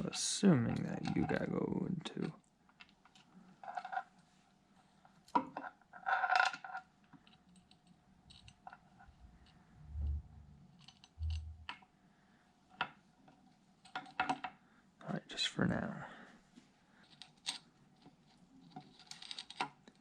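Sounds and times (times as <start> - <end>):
dull low thumps: 9.8 - 10.6, 11.2 - 11.7
metal parts clinking and scraping: 18.2 - 19.7.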